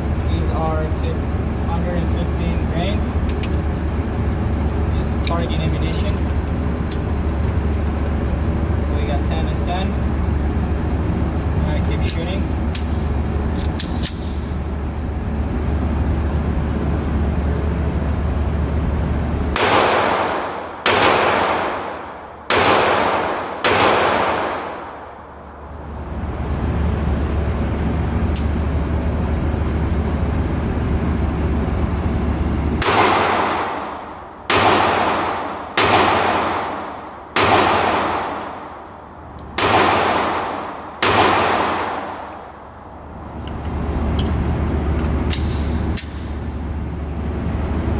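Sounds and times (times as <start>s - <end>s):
steady low hum: 0.0s - 47.9s
pistol shots: 19.5s - 25.2s, 32.8s - 38.8s, 39.5s - 42.6s.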